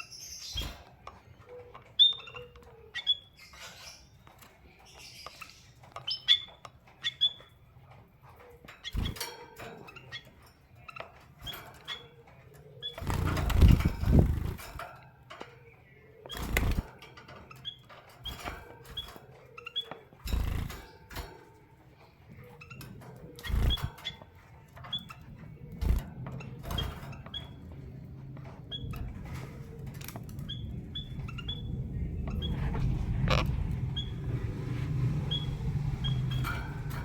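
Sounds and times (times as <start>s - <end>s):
birds chirping: 0.0s - 37.0s
birds knocking in cage: 8.6s - 12.0s, 12.8s - 15.6s.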